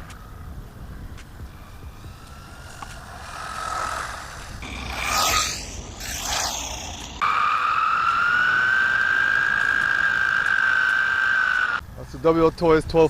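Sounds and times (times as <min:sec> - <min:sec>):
electric motor whining: 0:01.4 - 0:11.8
rc car rushing by: 0:01.5 - 0:11.8.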